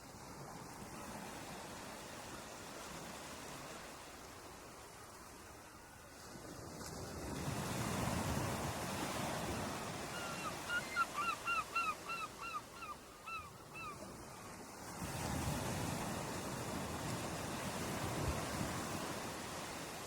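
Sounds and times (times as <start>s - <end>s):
ocean surf washing: 0.0s - 20.0s
bird honking calls: 10.2s - 14.0s.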